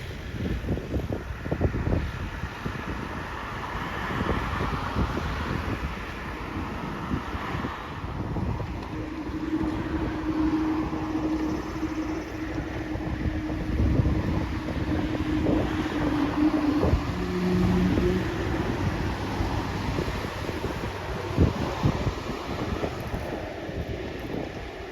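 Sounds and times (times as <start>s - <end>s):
jet engines rumbling: 0.0s - 24.9s
wind buffeting microphone: 0.0s - 24.9s.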